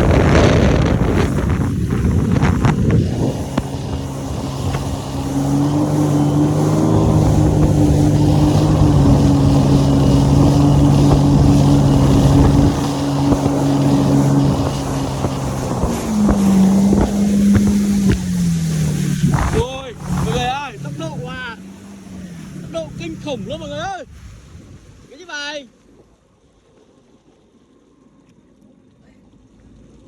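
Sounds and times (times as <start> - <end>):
wind and water rush: 0.0 - 28.1
jet ski engine running: 0.0 - 30.0.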